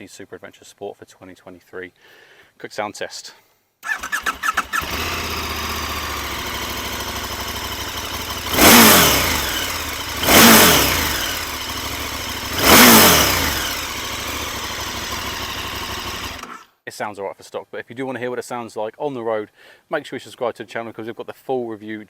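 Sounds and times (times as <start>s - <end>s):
motorcycle engine revving: 3.8s - 16.6s
motorcycle engine starting and idling: 3.8s - 16.7s.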